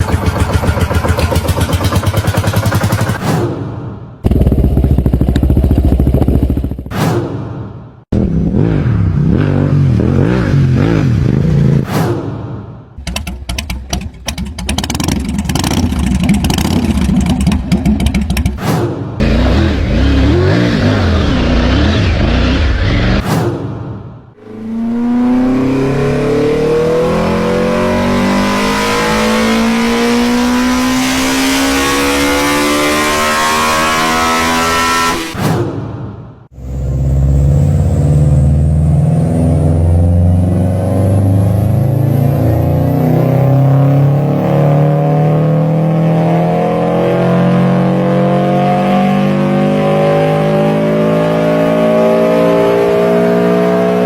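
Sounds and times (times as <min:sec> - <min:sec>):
car engines accelerating: 0:19.2 - 0:23.2, 0:24.4 - 0:35.4, 0:36.6 - 0:54.0.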